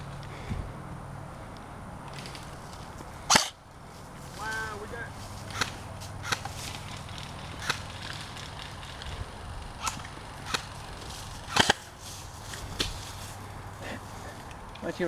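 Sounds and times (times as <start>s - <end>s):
airsoft gun shots: 3.3s - 3.6s, 5.5s - 6.6s, 7.6s - 8.1s, 9.8s - 10.8s, 11.5s - 11.9s.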